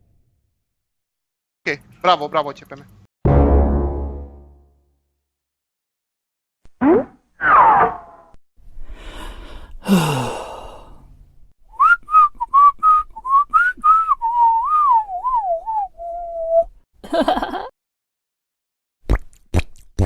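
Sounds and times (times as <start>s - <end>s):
falling poing sound effect: 3.3s - 4.7s
person whistling a tune: 11.7s - 16.7s.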